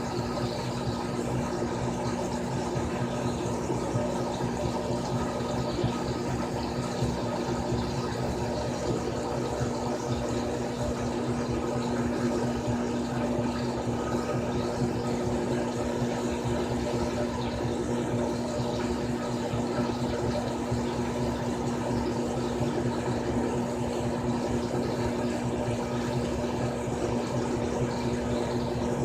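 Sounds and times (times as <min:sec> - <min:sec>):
washing machine motor hum: 0:00.0 - 0:29.0.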